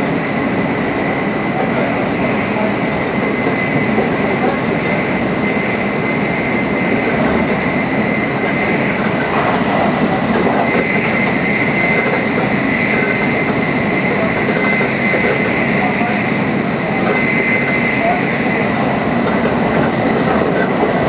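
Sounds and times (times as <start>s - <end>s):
high-speed train rushing rumble: 0.0s - 21.0s
thin high whine: 2.1s - 18.9s.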